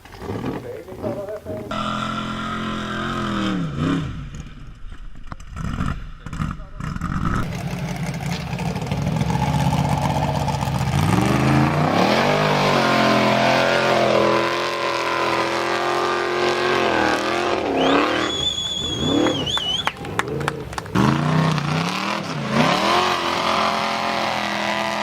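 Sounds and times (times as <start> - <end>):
buggy engine revving hard: 0.0 - 4.8, 5.5 - 25.0
high whistle-like tone: 17.6 - 20.0.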